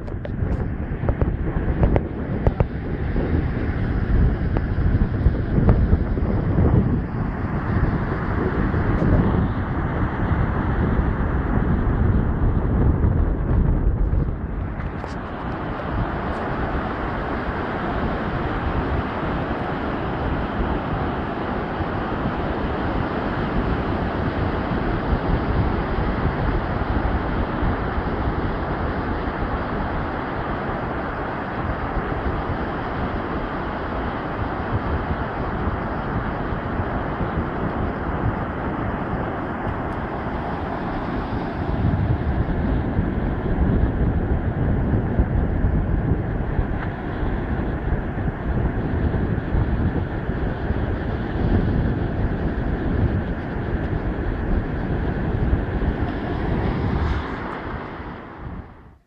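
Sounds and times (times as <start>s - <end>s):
low rumble: 0.0s - 22.1s, 34.7s - 59.0s
wind noise on microphone: 0.0s - 59.0s.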